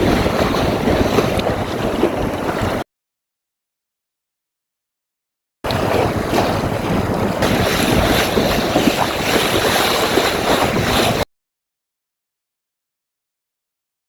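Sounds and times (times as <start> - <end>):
water slapping against boat hull: 0.0 - 2.8, 5.7 - 11.3
wind buffeting microphone: 0.0 - 2.8, 5.7 - 11.2.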